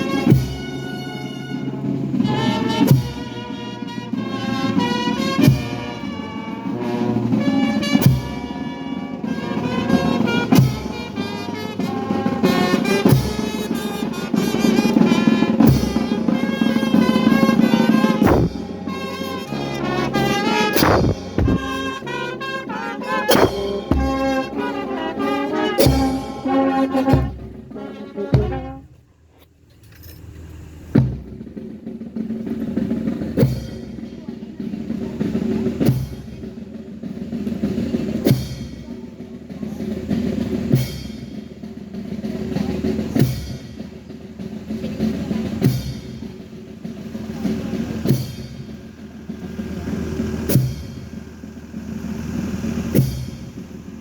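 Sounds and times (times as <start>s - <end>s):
drum beats: 0.0s - 28.9s, 31.0s - 54.0s
trumpets and trombones playing melody: 0.0s - 29.0s.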